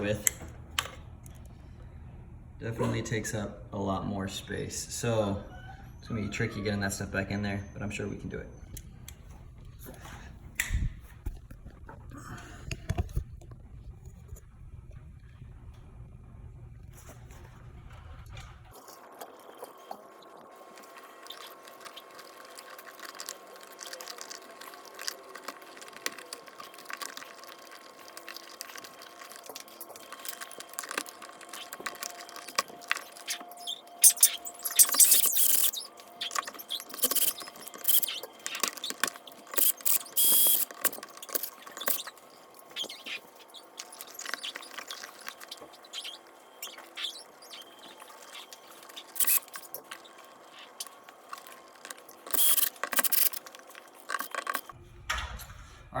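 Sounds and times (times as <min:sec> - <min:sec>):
electrical wires scraping and rustling: 0:16.8 - 0:54.8.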